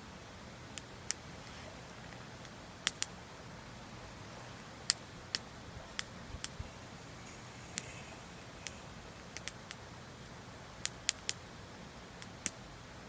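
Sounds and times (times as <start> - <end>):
campfire crackling: 0.0 - 13.0.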